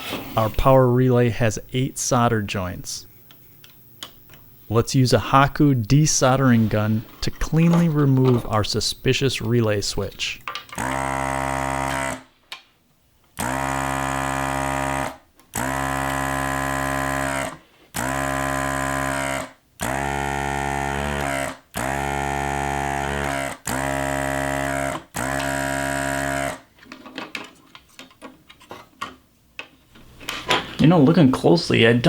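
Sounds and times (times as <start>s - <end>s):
desoldering pump buzzing: 7.5s - 12.2s, 13.4s - 26.6s.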